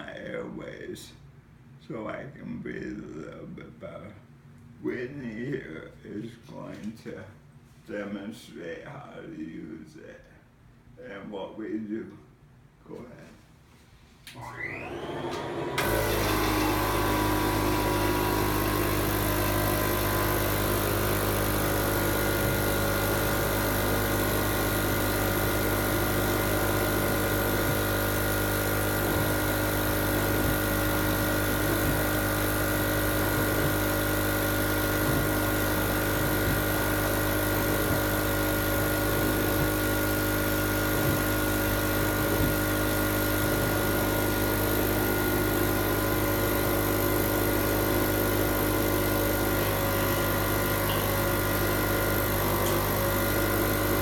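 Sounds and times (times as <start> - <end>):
blower motor whining: 14.3 - 54.0
machine rising whine: 14.4 - 54.0.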